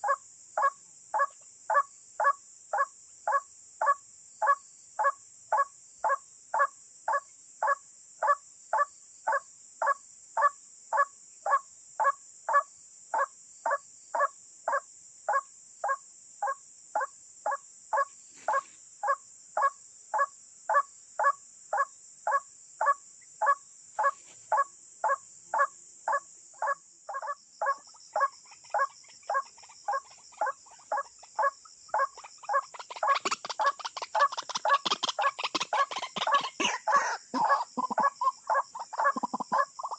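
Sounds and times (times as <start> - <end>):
waterhen calls: 17.9 - 39.9.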